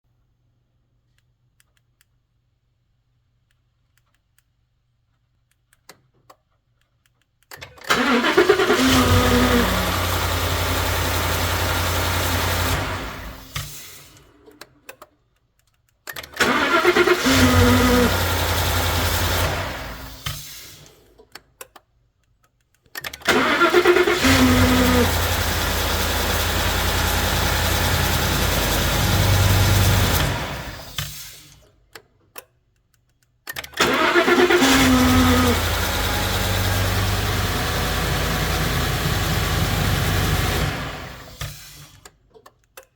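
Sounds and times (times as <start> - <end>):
engine cranking and starting: 7.6 - 14.8, 16.1 - 21.4, 23.0 - 31.7, 33.5 - 42.2
engine running: 23.4 - 31.0, 34.1 - 41.8.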